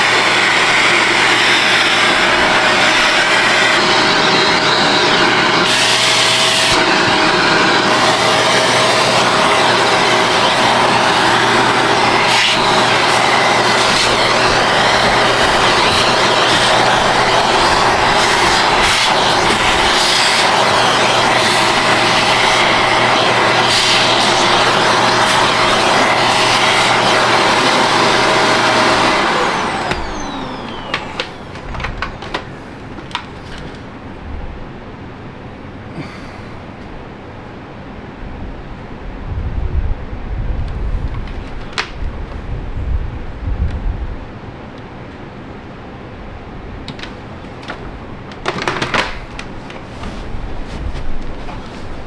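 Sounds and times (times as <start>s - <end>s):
motor winding down whine: 0.0s - 31.7s
vacuum cleaner running: 0.0s - 34.0s, 46.8s - 52.0s.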